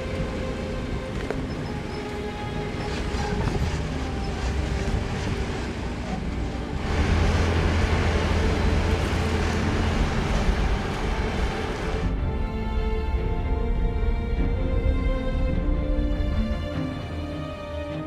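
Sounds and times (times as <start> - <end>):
off-road vehicle engine: 0.0 - 12.4
music: 0.0 - 18.0.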